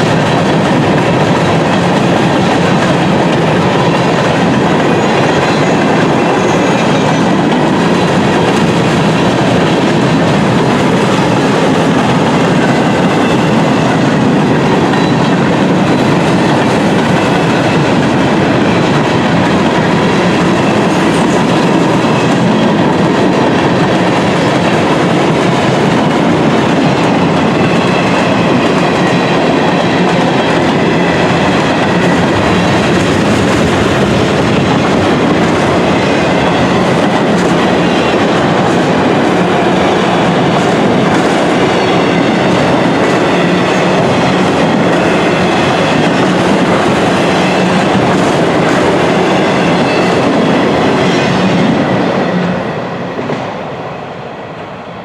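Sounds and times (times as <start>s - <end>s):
train wheels rolling on rails: 0.0s - 55.0s.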